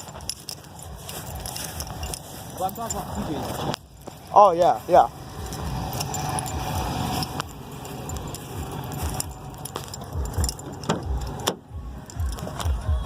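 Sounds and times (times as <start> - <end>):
loose things jangling in cab: 0.0 - 13.0
truck running rumble: 0.0 - 13.0
low thumps: 5.4 - 13.0.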